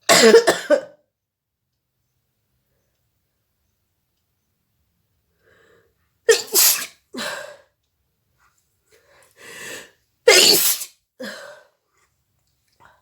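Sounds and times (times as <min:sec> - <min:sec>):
woman sneezing: 0:06.3 - 0:07.4, 0:10.3 - 0:11.4.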